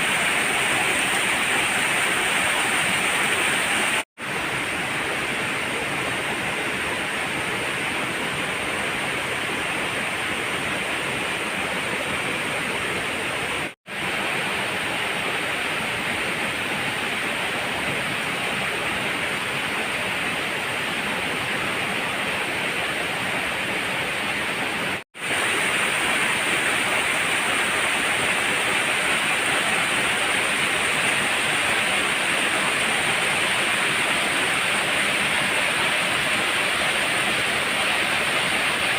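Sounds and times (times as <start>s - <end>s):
waterfall roaring: 0.0s - 38.9s.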